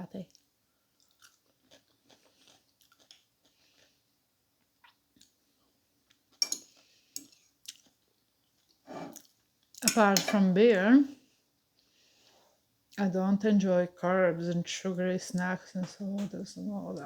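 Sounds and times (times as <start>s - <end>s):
close chewing: 1.0s - 4.0s.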